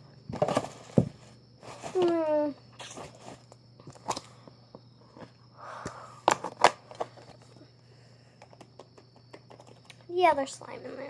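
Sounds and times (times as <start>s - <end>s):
plastic containers clicking: 8.4s - 10.0s.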